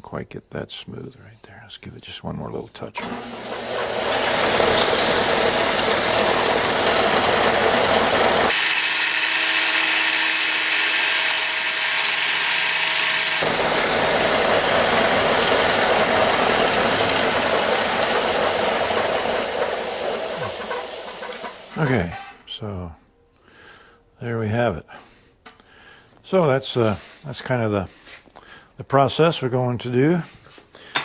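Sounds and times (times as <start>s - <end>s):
power tool running: 3.0s - 21.8s.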